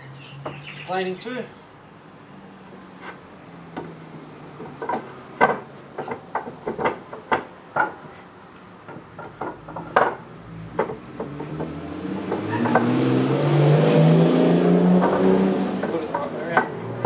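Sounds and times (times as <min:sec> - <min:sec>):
wooden knocks and clatters: 0:03.7 - 0:08.2, 0:08.8 - 0:13.0.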